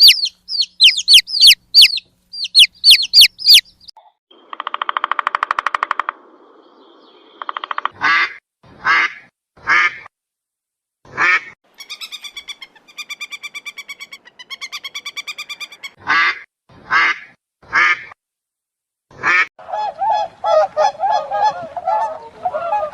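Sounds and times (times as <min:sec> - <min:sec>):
duck quacking: 0:00.0 - 0:03.6, 0:07.9 - 0:10.1, 0:11.1 - 0:12.0, 0:15.6 - 0:18.2, 0:19.1 - 0:22.9
goose honking: 0:19.2 - 0:22.9.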